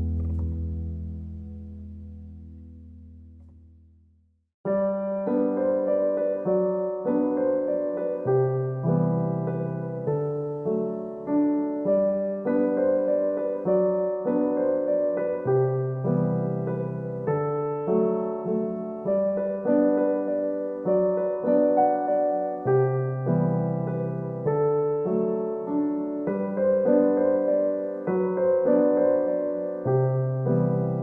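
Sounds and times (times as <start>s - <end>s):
gentle piano: 0.0s - 3.6s, 4.7s - 31.0s
soft bass line: 0.0s - 4.2s.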